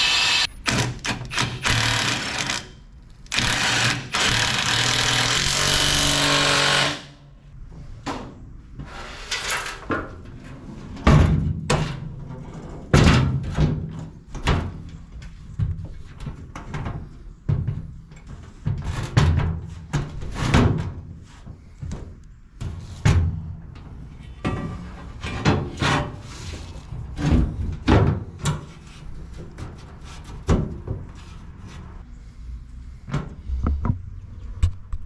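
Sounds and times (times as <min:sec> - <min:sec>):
power tool working steel: 0:00.0 - 0:02.7, 0:03.3 - 0:07.2
metal clanks and knocks: 0:24.3 - 0:26.2.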